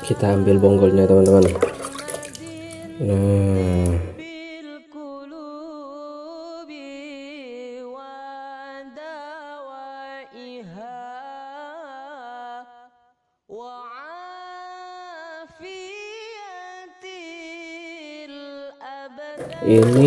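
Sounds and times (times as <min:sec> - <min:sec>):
person singing slow notes: 0:00.0 - 0:04.3.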